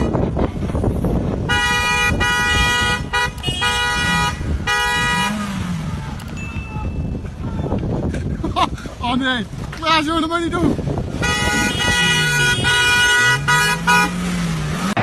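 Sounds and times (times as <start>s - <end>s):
low engine rumble: 0.4s - 11.2s
vehicle horn honking: 1.5s - 6.9s, 11.2s - 14.2s.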